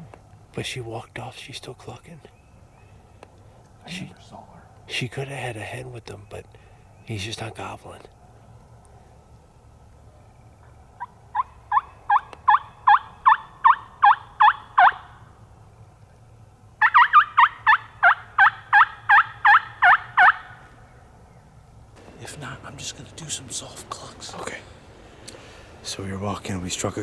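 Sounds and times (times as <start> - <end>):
turkey hen yelps: 11.0 - 15.2, 16.8 - 20.7.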